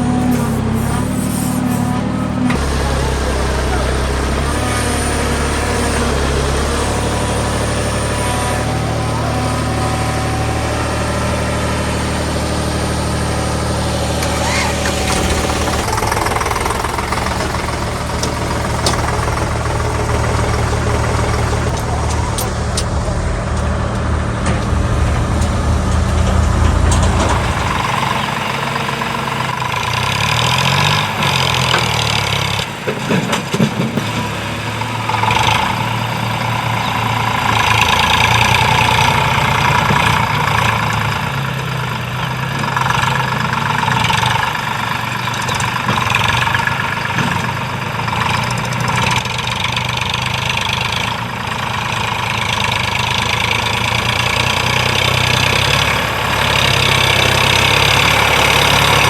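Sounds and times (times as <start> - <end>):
tractor diesel engine running: 0.0 - 59.0
rising and falling whine: 19.7 - 29.8.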